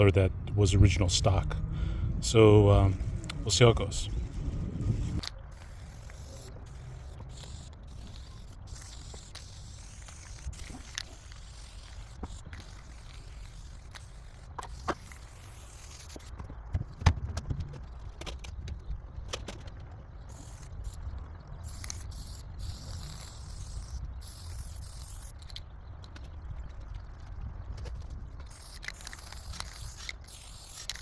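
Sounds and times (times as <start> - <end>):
wind rumble on microphone: 0.0 - 8.2, 25.7 - 29.7
spray paint can hissing: 4.8 - 16.4, 20.3 - 21.0, 21.6 - 25.6, 28.5 - 31.0.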